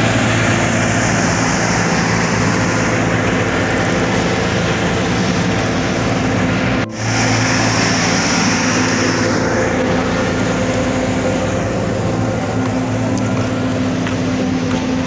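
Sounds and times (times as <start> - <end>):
hiss: 0.0 - 11.8
heavy machinery engine running: 0.0 - 15.0.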